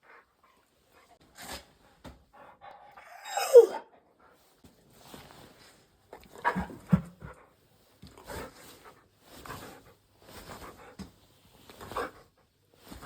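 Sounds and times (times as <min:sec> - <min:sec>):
dog howling: 0:03.0 - 0:03.8.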